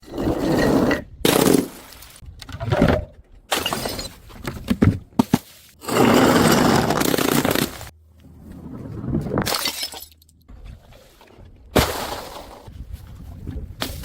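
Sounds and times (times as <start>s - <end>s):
glass bottles smashing: 9.4s - 10.2s.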